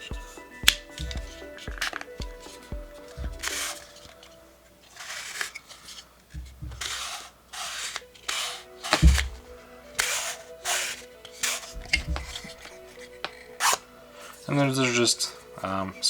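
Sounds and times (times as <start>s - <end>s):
wooden panels scraping: 0.9s - 16.0s
loud wooden knock: 6.4s - 7.0s, 9.0s - 9.5s.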